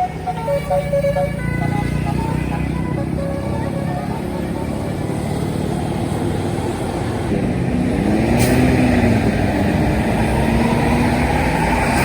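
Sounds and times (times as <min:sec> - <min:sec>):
heavy vehicle passing: 0:00.0 - 0:12.0.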